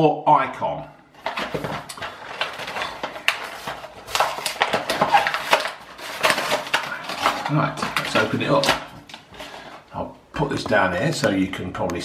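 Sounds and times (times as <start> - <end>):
packaging crinkling and clicking: 1.2 - 9.8.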